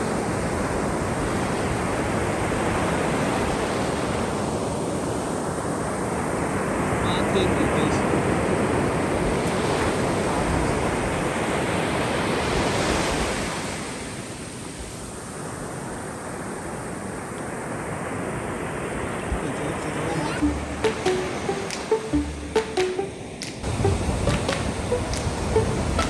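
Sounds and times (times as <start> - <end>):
waves breaking on sand: 0.0 - 20.3.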